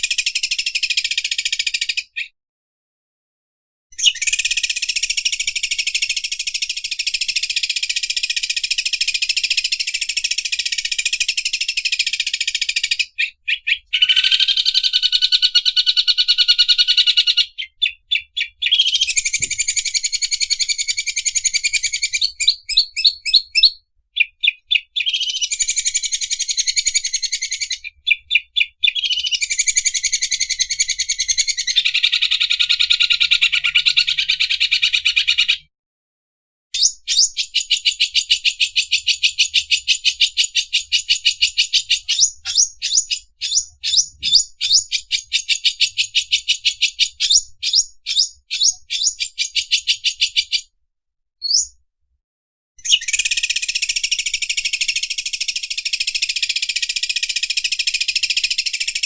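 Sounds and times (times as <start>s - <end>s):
bird singing high ticking notes: 4.0s - 34.7s, 36.8s - 50.7s.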